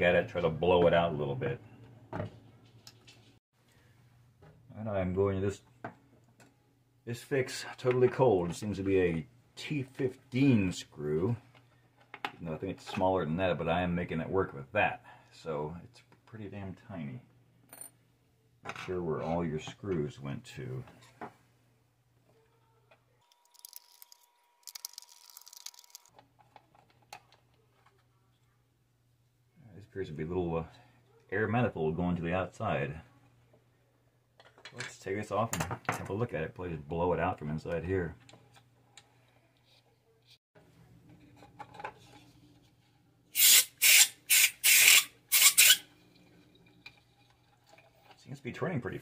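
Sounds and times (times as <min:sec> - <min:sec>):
small plastic parts rattling: 0:23.3 - 0:28.0.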